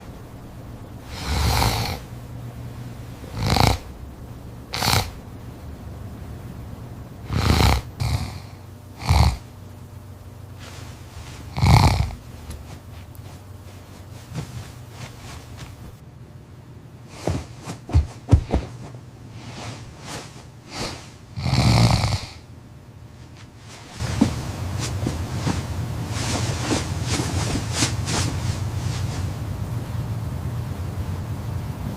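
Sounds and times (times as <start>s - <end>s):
person snoring loudly: 1.0s - 2.1s, 3.3s - 4.0s, 4.7s - 5.2s, 7.2s - 9.5s, 11.4s - 12.3s, 20.7s - 22.4s.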